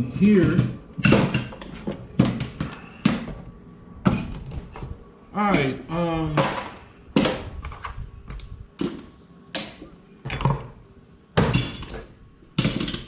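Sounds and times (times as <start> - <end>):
metal tools clanking on table: 0.2 - 2.0, 11.4 - 13.0.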